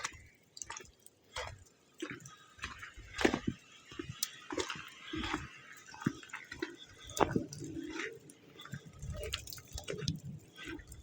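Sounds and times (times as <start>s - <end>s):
footsteps crunching in snow: 1.4s - 6.6s.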